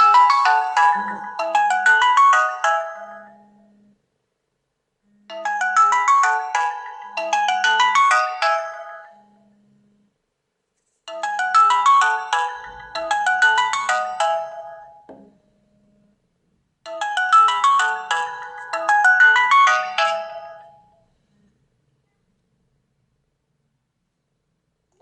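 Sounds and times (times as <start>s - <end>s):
phone alarm melody: 0.0s - 4.0s, 5.3s - 9.7s, 11.1s - 16.0s, 16.9s - 21.0s.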